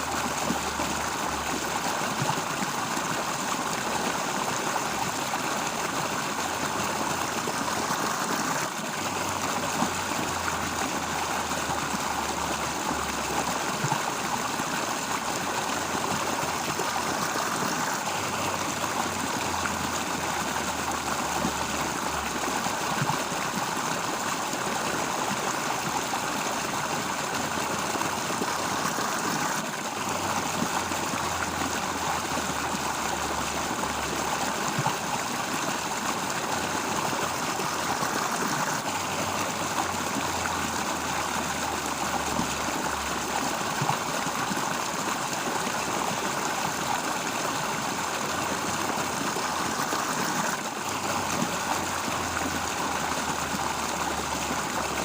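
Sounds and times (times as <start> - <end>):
running water flowing: 0.0 - 55.0.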